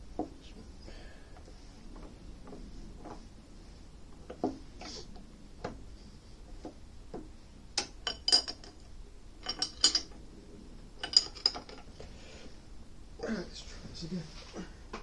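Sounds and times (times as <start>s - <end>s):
metal tools clinking: 7.8s - 10.2s, 11.0s - 12.0s.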